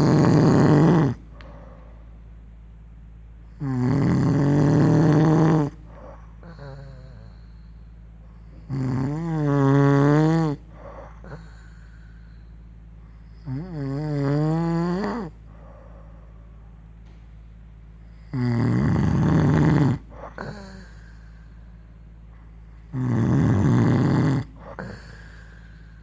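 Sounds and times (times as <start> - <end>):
person snoring: 0.0 - 1.6, 3.6 - 7.7, 8.6 - 12.1, 13.4 - 15.4, 18.2 - 21.6, 22.9 - 26.0
faint breath: 1.2 - 2.2, 5.9 - 8.7, 10.6 - 13.5, 15.4 - 17.2, 20.1 - 22.9, 24.4 - 26.0.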